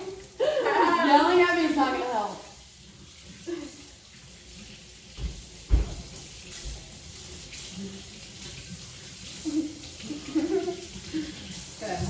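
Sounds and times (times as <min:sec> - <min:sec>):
tap running into sink: 0:05.0 - 0:07.7
dull thumps: 0:05.2 - 0:06.2.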